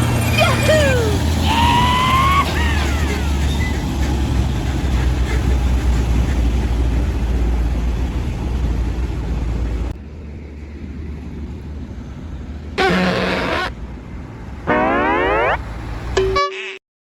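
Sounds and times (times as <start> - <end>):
heavy vehicle engine rumbling: 0.0 - 16.4
loud pitched blast: 12.8 - 13.7, 14.7 - 15.6
rising boing glide: 14.7 - 15.6.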